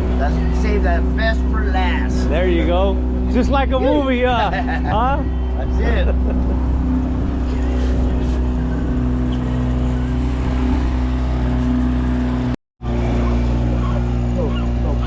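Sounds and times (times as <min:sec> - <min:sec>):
boat engine running: 0:00.0 - 0:15.0.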